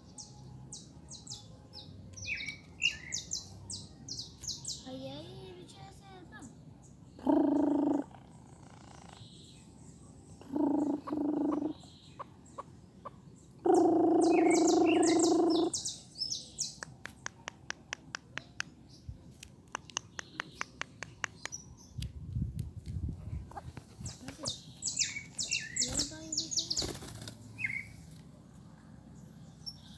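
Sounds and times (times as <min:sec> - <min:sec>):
held steady-pitch bird sounds: 0:00.0 - 0:29.9
pet bird chirping: 0:00.1 - 0:05.2, 0:10.4 - 0:22.1, 0:23.6 - 0:27.9.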